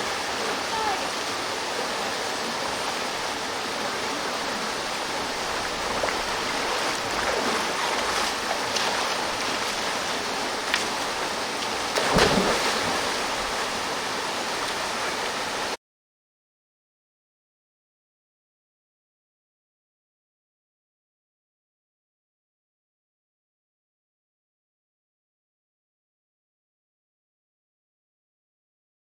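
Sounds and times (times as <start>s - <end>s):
waterfall rushing: 0.0s - 15.8s.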